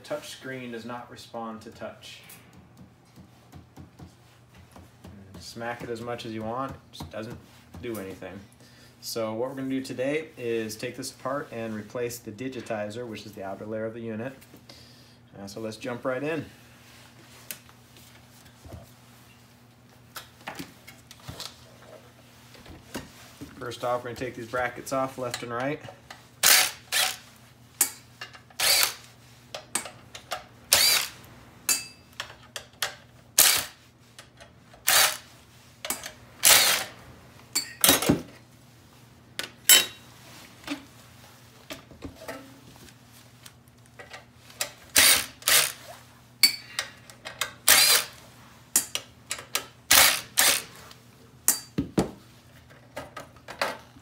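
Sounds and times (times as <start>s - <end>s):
low steady hum: 0.0s - 53.7s
power screwdriver whirring: 26.4s - 27.2s, 28.6s - 29.0s, 30.7s - 31.2s, 33.4s - 33.8s, 34.8s - 35.2s, 36.4s - 36.9s, 45.0s - 45.8s, 47.7s - 48.1s, 49.9s - 50.7s.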